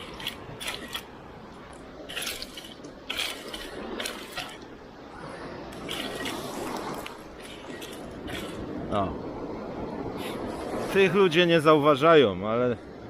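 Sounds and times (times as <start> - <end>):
seawater splashing and dripping: 0.0 - 8.8
steady wash of water: 0.0 - 13.0.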